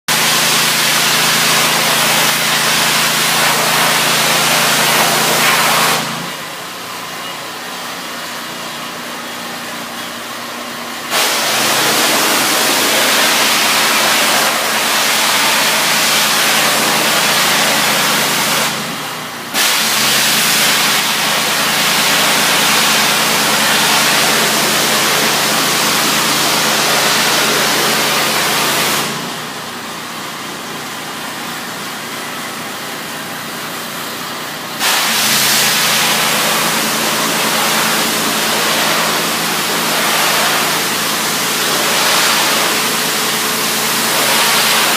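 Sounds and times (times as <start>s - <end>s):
pressure washer spray hissing: 0.1s - 6.3s, 11.1s - 29.5s, 34.8s - 44.9s
engine running steadily: 0.2s - 44.9s.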